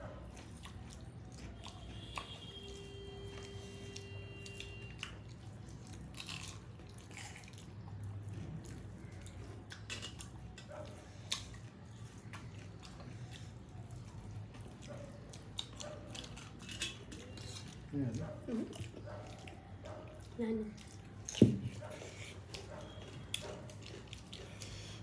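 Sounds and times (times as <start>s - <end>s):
people chewing and smacking: 0.0s - 25.0s.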